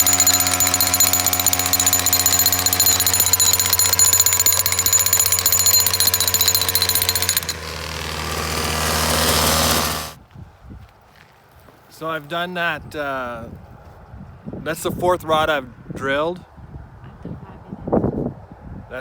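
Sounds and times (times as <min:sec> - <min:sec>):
engine running: 0:00.0 - 0:10.2
jackhammer pounding rod: 0:00.0 - 0:10.2.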